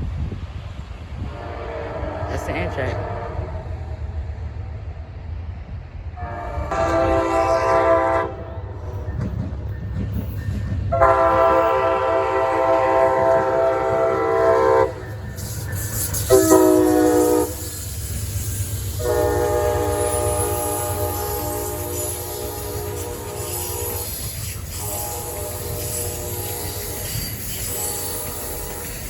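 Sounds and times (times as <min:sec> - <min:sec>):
train rumble: 0:00.0 - 0:29.0
train air horn blasts: 0:01.3 - 0:03.6, 0:06.2 - 0:08.7, 0:10.9 - 0:17.9, 0:18.9 - 0:29.0.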